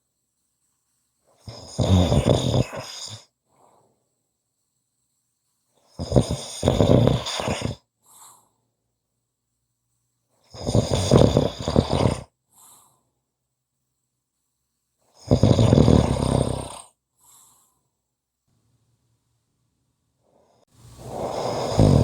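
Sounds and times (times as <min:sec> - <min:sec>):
person snoring: 0:01.4 - 0:03.2, 0:06.0 - 0:07.8, 0:10.5 - 0:12.3, 0:15.2 - 0:16.9, 0:20.3 - 0:22.0
faint breath: 0:03.4 - 0:04.3, 0:08.0 - 0:08.8, 0:12.5 - 0:13.3, 0:17.1 - 0:18.0, 0:20.2 - 0:22.0.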